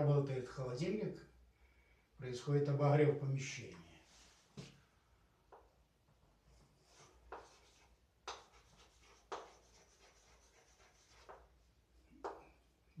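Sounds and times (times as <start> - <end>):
pen scratching while writing: 6.9 - 11.5.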